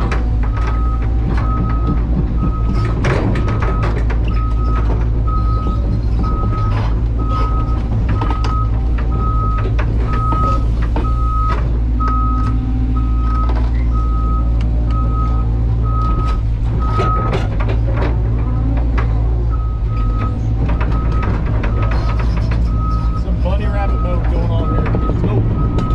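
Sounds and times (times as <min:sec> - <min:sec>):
metal clanks and knocks: 0:00.0 - 0:12.5, 0:15.8 - 0:25.9
excavator diesel engine running: 0:00.0 - 0:25.9
backup alarm beeping: 0:22.8 - 0:25.9.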